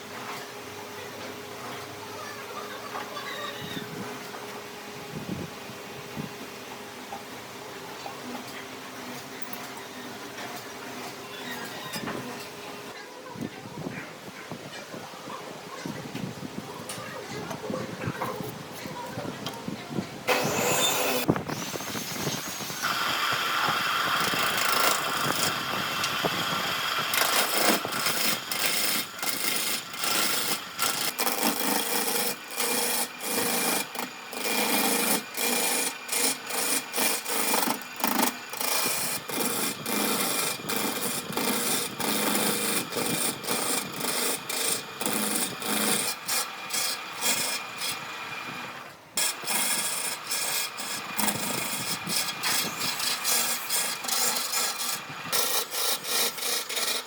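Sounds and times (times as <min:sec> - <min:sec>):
hand tool rubbing on wood: 0:49.5 - 0:57.0.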